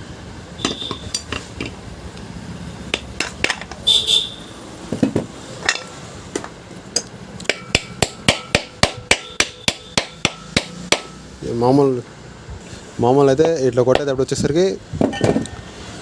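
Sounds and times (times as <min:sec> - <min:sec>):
hammer blows on metal: 0:07.5 - 0:11.3.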